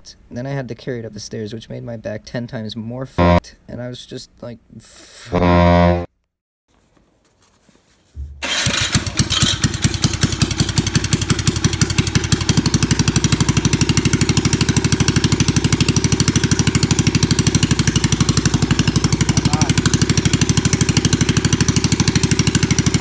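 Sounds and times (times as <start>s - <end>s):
small engine cranking: 8.4s - 14.5s
single-cylinder engine running: 8.4s - 23.0s.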